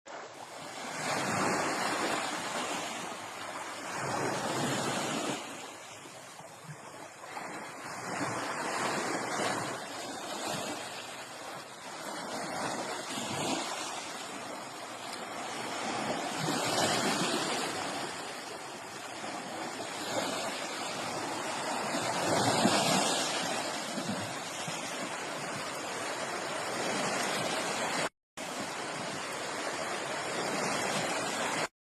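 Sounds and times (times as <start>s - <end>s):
sea waves washing: 0.3s - 31.7s.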